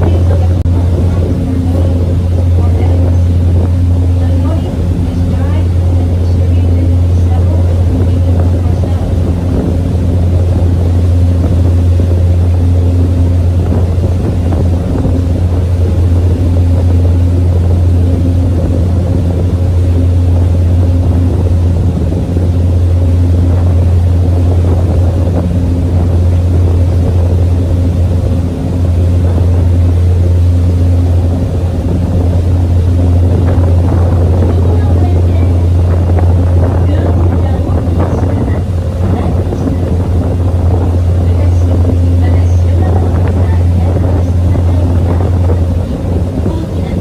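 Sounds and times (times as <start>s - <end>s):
boat engine droning: 0.0s - 47.0s.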